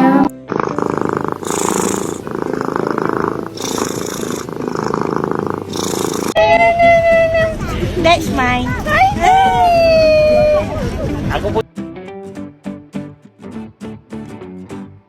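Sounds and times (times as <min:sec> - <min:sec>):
cat purring loudly: 0:00.4 - 0:06.4.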